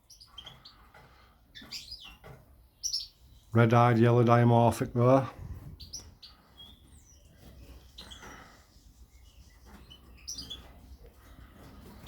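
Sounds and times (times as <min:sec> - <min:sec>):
finches and canaries chirping: 0:00.0 - 0:12.0.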